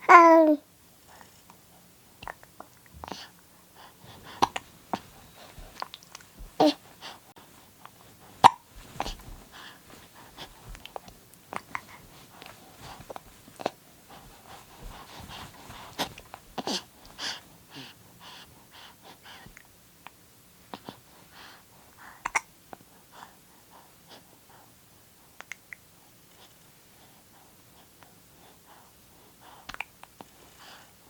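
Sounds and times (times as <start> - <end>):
baby hiccupping: 0.0 - 0.6, 8.4 - 9.1, 22.2 - 22.5
baby breathing: 3.0 - 19.5.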